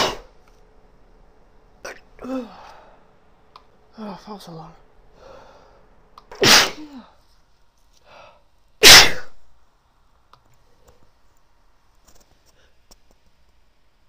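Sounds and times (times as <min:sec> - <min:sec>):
woman sneezing: 0:00.0 - 0:00.3, 0:06.3 - 0:07.2, 0:08.8 - 0:09.4.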